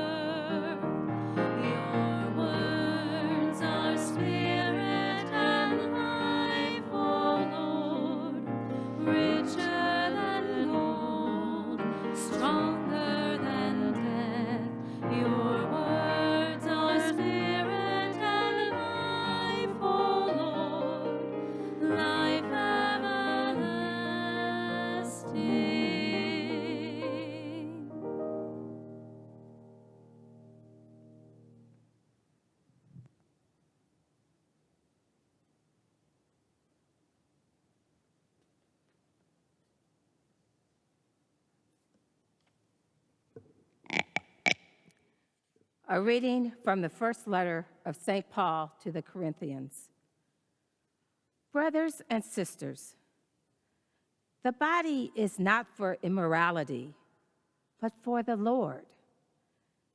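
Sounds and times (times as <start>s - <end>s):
slow church music: 0.0s - 31.9s.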